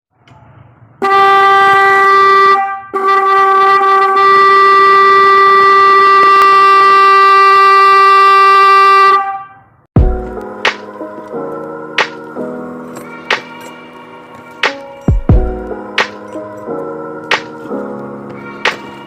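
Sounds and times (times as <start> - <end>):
electric horn blasts: 1.0 - 9.6
music: 10.0 - 19.0.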